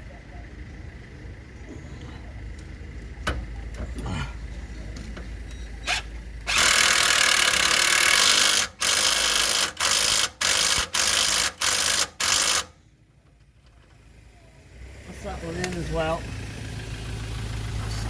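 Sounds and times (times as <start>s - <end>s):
power tool driving a bolt: 5.9s - 12.7s.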